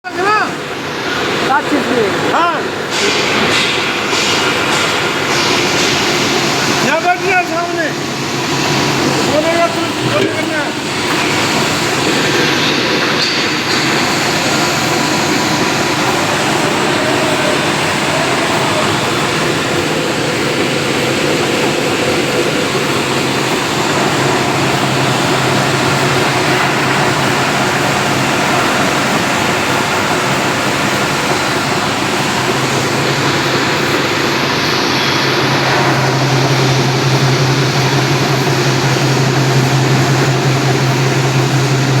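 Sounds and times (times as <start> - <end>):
cnc machine running: 0.1 - 42.0
low hum: 9.8 - 42.0.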